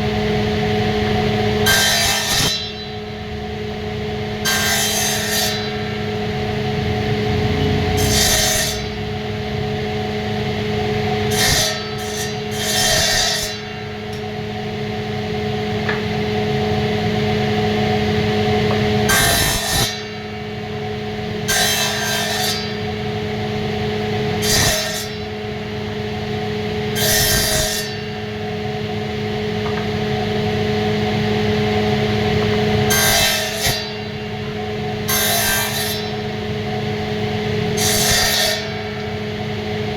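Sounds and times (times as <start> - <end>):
motor humming: 5.9 - 9.8.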